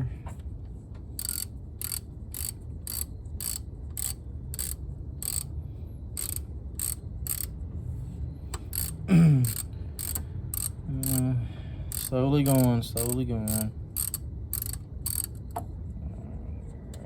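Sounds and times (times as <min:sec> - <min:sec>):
ratchet pawl clicking: 0:01.2 - 0:05.5, 0:06.2 - 0:07.6, 0:08.5 - 0:11.3, 0:11.9 - 0:15.6.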